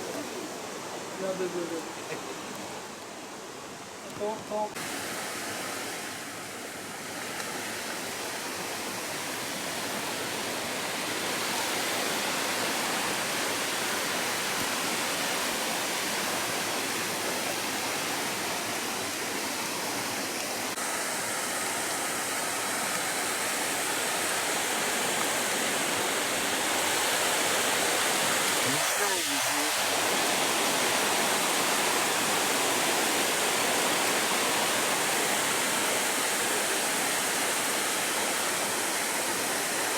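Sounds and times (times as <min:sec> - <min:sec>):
waterfall pouring: 0:20.6 - 0:39.9.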